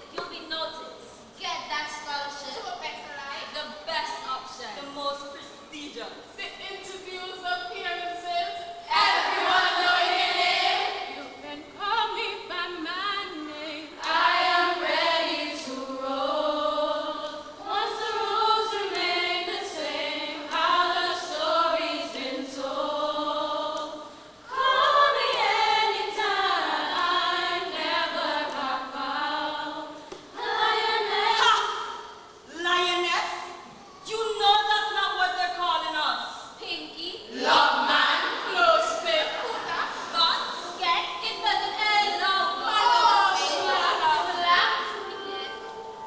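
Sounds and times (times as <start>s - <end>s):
choir singing: 6.8s - 32.4s, 37.3s - 46.0s.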